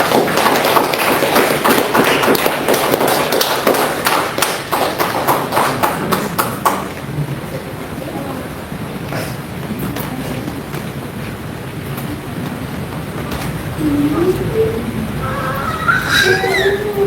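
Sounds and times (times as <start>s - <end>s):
congregation applauding: 0.0s - 7.4s.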